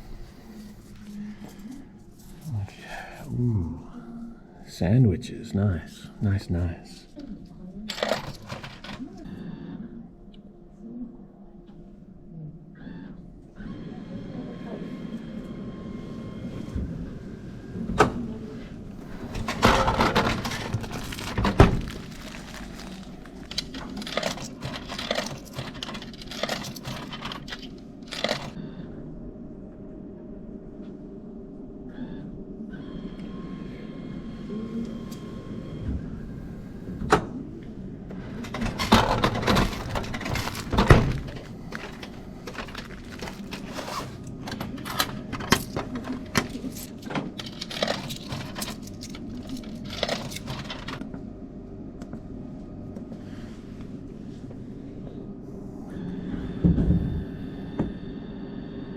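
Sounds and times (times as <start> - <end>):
vending machine clicks and clatter: 7.8 - 9.3, 19.0 - 28.6, 38.1 - 51.2
items thunking into tray: 19.2 - 28.6, 38.5 - 51.0.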